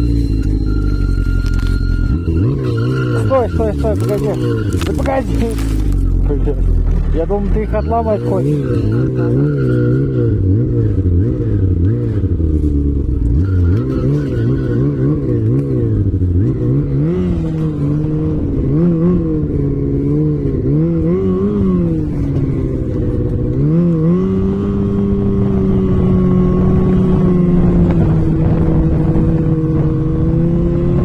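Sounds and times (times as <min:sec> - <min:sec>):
off-road vehicle engine revving: 0:00.0 - 0:31.0.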